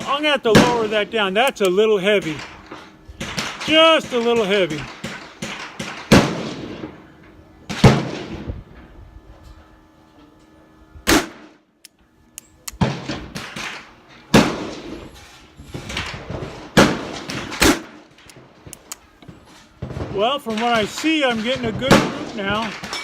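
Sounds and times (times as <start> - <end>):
gunshots with echoes: 19.8 - 23.0.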